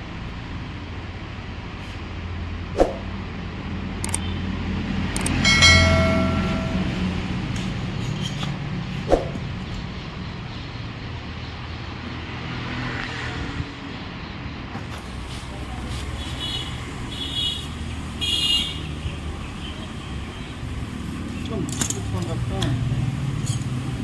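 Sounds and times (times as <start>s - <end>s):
brief ringing tone: 5.3s - 7.4s
sharp knocks: 5.5s - 7.2s.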